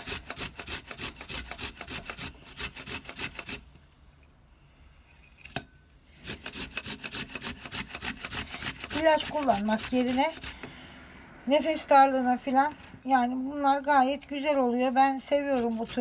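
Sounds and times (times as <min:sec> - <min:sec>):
ginger rasping on a grater: 0:00.0 - 0:03.7, 0:06.2 - 0:10.6, 0:15.0 - 0:16.0.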